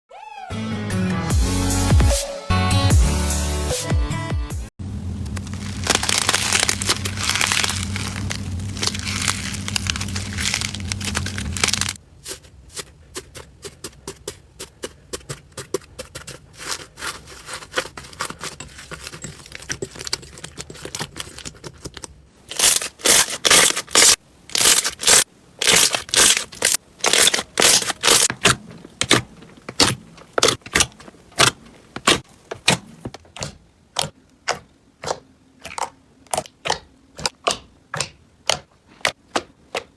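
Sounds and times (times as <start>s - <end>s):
low hum: 4.8s - 12.0s
crunchy slime crackling: 4.9s - 12.0s, 22.4s - 33.1s.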